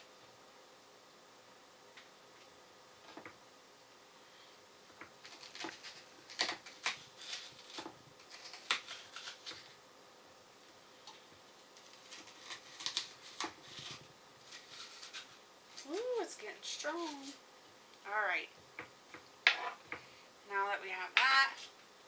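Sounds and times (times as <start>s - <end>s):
onion being peeled by hand: 4.8s - 10.0s, 10.7s - 20.2s.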